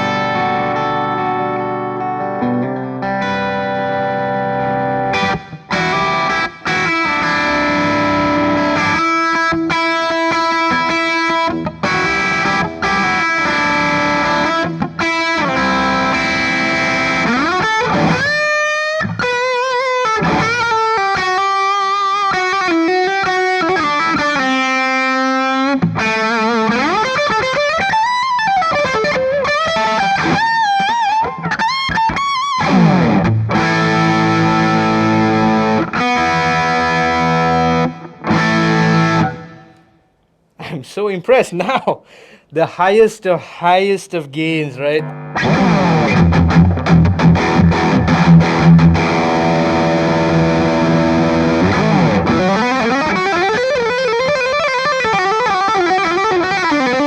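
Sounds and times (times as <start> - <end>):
electric guitar lead with bends: 0.0 - 21.6, 45.0 - 57.0
overdriven electric guitar chords: 0.0 - 31.2, 32.6 - 39.8, 45.0 - 57.0.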